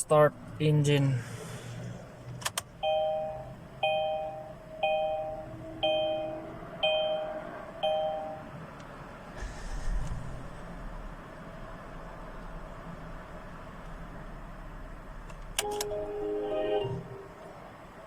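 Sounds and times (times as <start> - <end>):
car engine rumble: 0.0 - 18.0
car warning chime: 2.8 - 8.6, 15.6 - 17.5.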